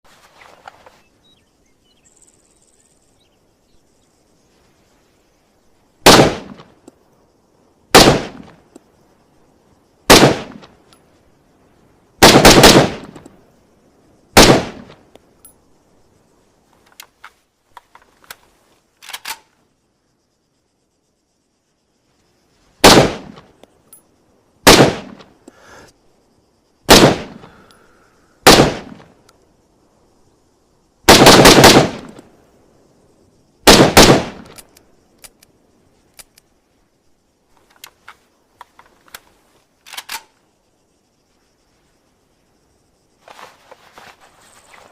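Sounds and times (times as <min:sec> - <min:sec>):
rifle shots: 0:06.0 - 0:06.7, 0:07.9 - 0:08.5, 0:10.1 - 0:10.7, 0:12.2 - 0:13.2, 0:14.4 - 0:15.0, 0:22.8 - 0:23.4, 0:24.6 - 0:25.2, 0:26.9 - 0:27.4, 0:28.4 - 0:29.0, 0:31.1 - 0:32.2, 0:33.6 - 0:34.6
faint clicks: 0:16.7 - 0:19.6, 0:27.4 - 0:27.9, 0:34.4 - 0:36.6, 0:37.5 - 0:40.5.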